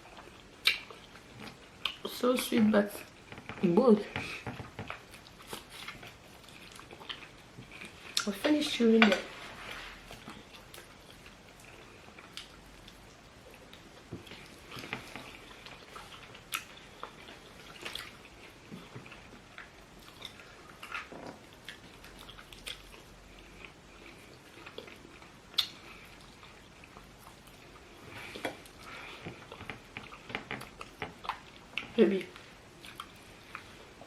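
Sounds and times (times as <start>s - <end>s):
chewing and mouth smacks: 0.0s - 2.1s, 4.6s - 8.4s, 10.1s - 34.0s
sharp mouth clicks: 25.6s - 25.8s.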